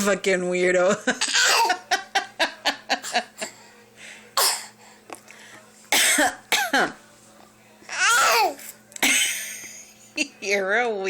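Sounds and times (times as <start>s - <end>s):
baby coughing: 1.3s - 1.8s, 4.4s - 4.8s, 6.0s - 6.9s, 8.0s - 9.2s.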